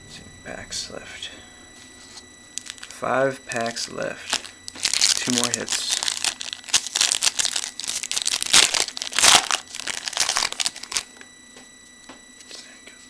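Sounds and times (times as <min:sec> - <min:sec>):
card pack wrapper tearing and crinkling: 0:02.6 - 0:03.0, 0:04.3 - 0:11.1.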